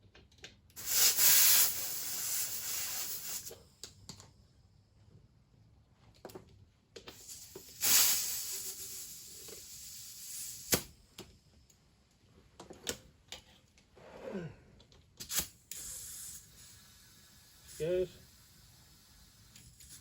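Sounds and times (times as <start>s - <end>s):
air hissing into tyre: 0.8s - 3.6s, 7.1s - 11.0s, 15.2s - 20.0s.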